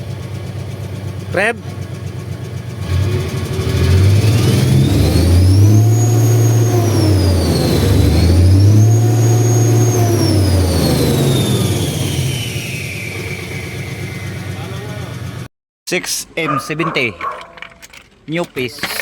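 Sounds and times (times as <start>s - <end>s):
diesel engine revving: 0.0s - 15.5s
high turbo whine: 2.5s - 15.5s.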